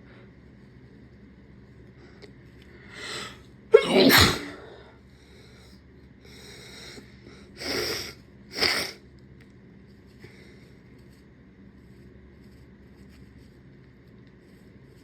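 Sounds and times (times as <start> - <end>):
person sneezing: 3.7 - 4.8
faint breathing: 4.6 - 8.2.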